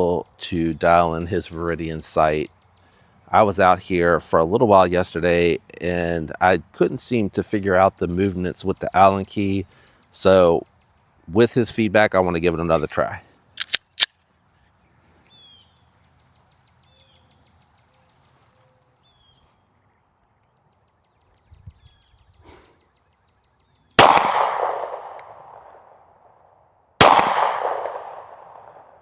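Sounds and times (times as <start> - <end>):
pistol shots ringing: 24.0 - 25.9, 27.0 - 29.0.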